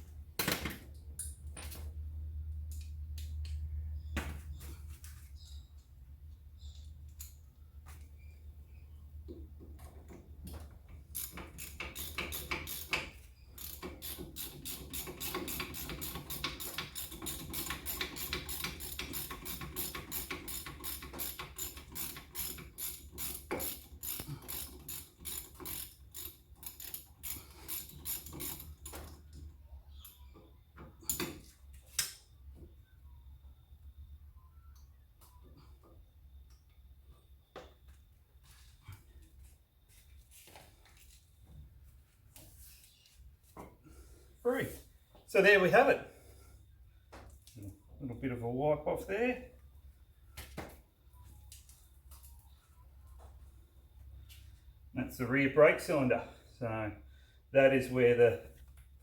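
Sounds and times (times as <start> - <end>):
hand ratchet clicking: 11.1 - 29.1.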